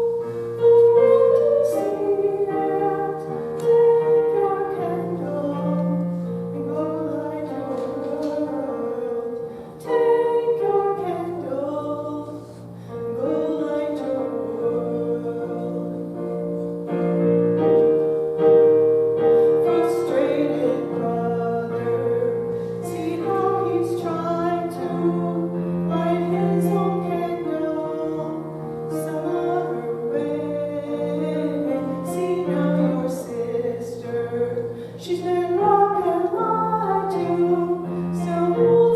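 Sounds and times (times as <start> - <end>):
women singing slow song: 0.7 - 16.4, 19.5 - 38.9.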